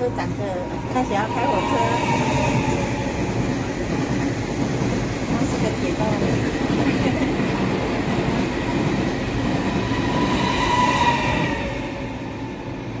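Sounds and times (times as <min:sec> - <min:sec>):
train passing at high speed: 0:00.0 - 0:13.0.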